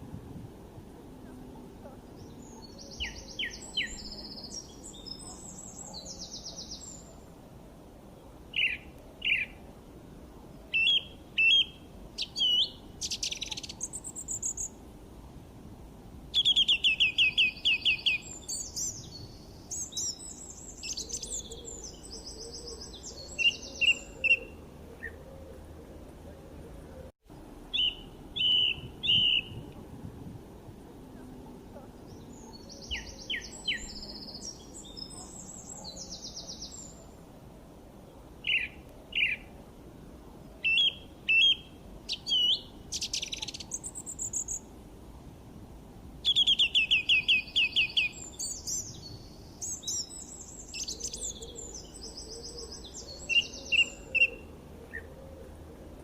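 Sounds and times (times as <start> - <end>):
low background noise: 0.0 - 56.0
songbirds chirping and singing: 1.2 - 7.2, 10.7 - 14.7, 16.4 - 27.1, 32.0 - 37.2, 46.3 - 55.6.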